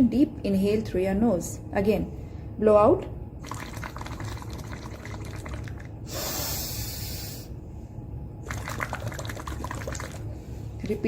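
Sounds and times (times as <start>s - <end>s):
bubbling through straw in water: 3.4s - 6.4s, 8.4s - 11.0s
breath drawn in: 6.1s - 7.6s.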